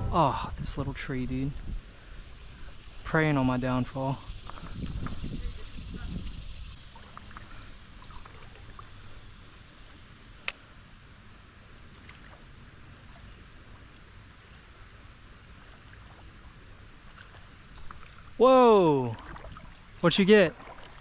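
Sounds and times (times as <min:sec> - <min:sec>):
creek water flowing: 0:00.0 - 0:21.0.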